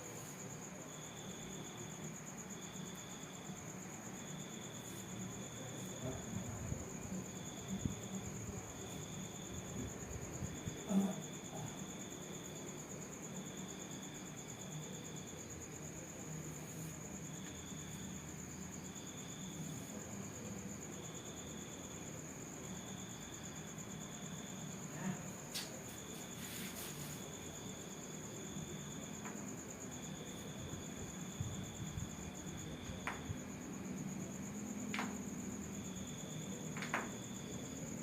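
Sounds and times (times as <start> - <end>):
insect high pulsing trill: 0.0 - 38.0
soft low rubbing: 25.8 - 27.6
light knocks: 36.7 - 37.2.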